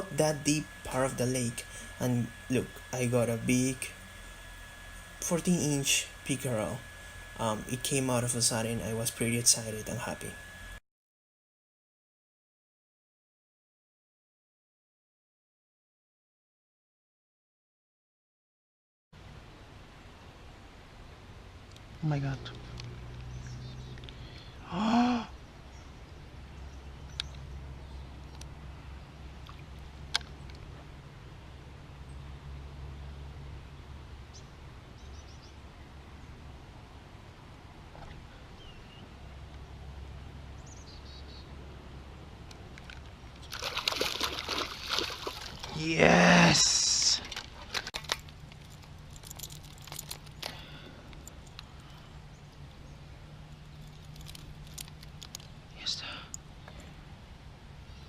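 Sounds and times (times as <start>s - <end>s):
low steady hum: 0.0s - 10.8s, 19.2s - 58.0s
voiced cry rising and falling: 45.8s - 47.2s
handling clicks and rustles: 47.2s - 52.0s, 53.5s - 55.6s.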